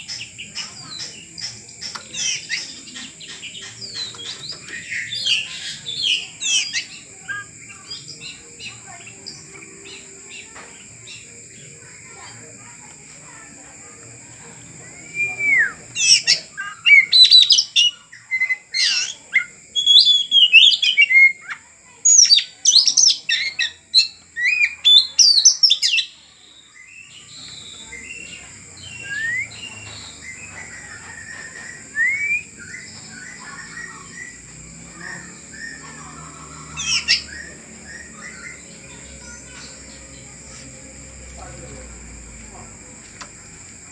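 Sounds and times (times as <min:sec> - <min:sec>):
bird singing whistles and chirps: 0:14.9 - 0:40.0.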